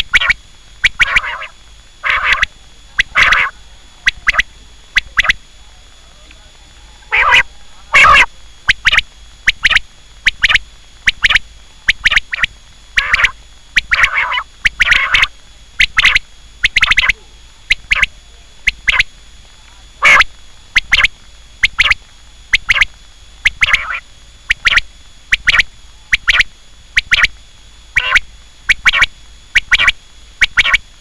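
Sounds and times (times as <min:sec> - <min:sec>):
quail calling: 0:00.0 - 0:05.7, 0:06.8 - 0:19.1, 0:20.0 - 0:22.0, 0:23.5 - 0:24.8, 0:27.9 - 0:30.8.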